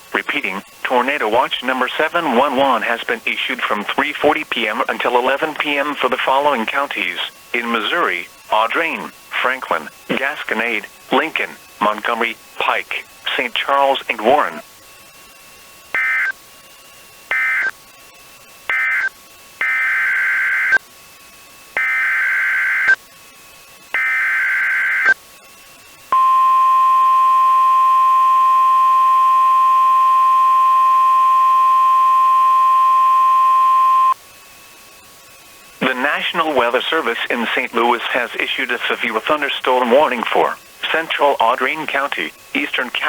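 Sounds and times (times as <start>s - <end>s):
steady alarm tone: 13.4s - 16.4s, 17.3s - 20.8s, 21.7s - 23.0s, 23.8s - 34.2s.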